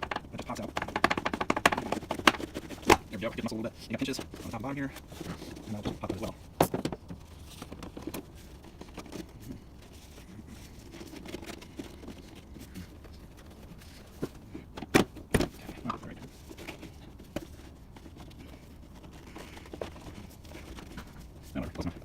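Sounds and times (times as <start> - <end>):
sharp knocks: 0.0 - 3.0.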